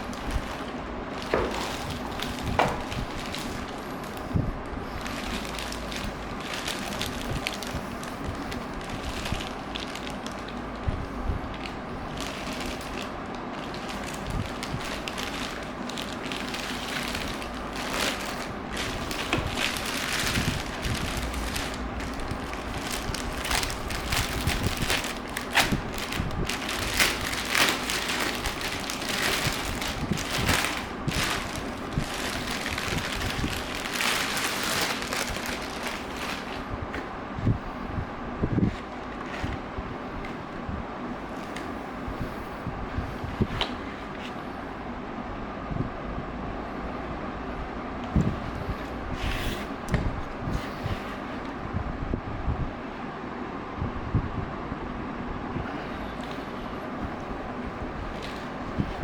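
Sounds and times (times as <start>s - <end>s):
crackling and clicking: 11.5s - 36.6s.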